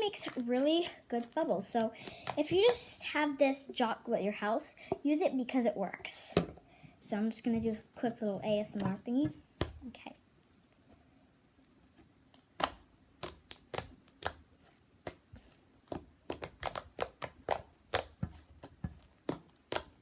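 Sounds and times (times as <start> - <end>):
slime clicking and popping: 12.4 - 14.4, 15.9 - 20.0.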